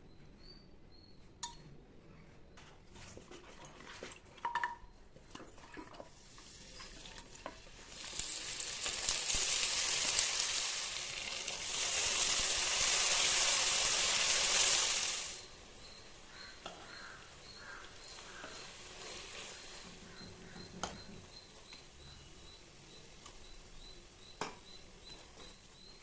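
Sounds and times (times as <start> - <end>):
food sizzling in hot oil: 6.3 - 20.2.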